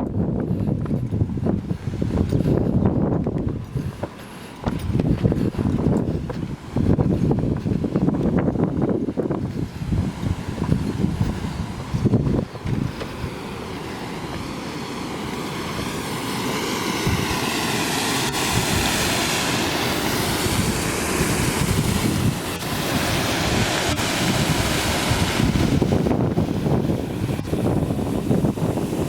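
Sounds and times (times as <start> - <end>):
wind buffeting microphone: 0.0 - 29.0
waterfall rushing: 9.2 - 29.0.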